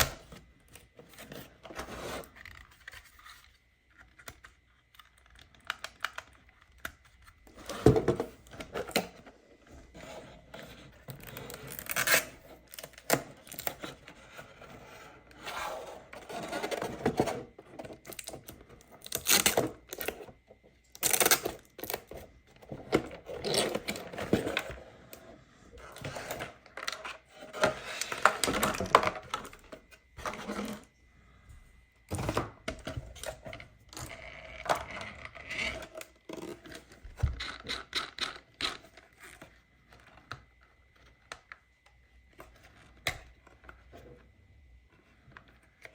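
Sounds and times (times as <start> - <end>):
plastic and cardboard clatter: 0.0 - 30.8
packaging rustling and tearing: 16.4 - 20.2, 20.9 - 22.1.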